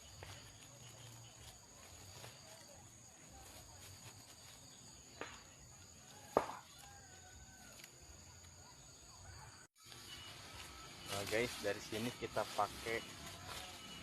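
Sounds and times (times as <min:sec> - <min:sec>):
insects buzzing: 0:09.8 - 0:14.0.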